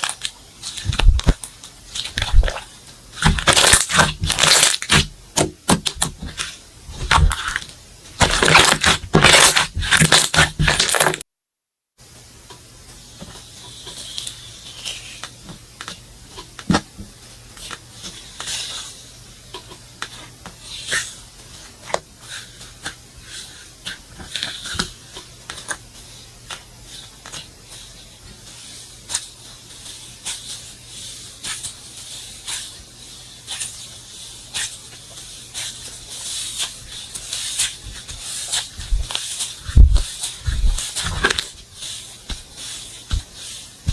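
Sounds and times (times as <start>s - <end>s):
slime crackling and squelching: 0.0s - 11.2s, 34.4s - 43.9s.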